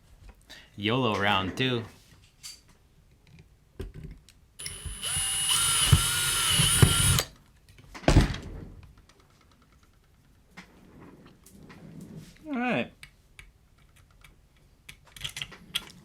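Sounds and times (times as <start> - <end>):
electric drill drilling: 4.6 - 7.3.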